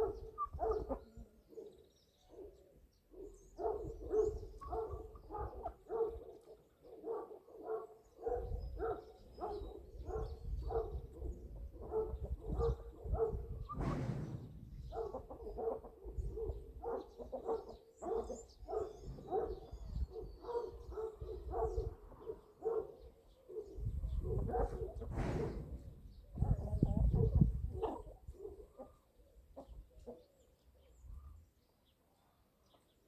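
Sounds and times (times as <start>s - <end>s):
low rumble: 13.7s - 15.1s.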